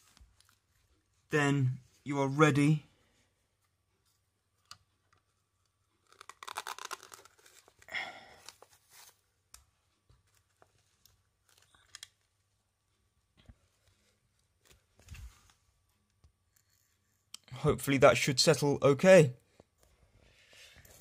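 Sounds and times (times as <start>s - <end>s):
velcro tearing: 5.9s - 7.9s.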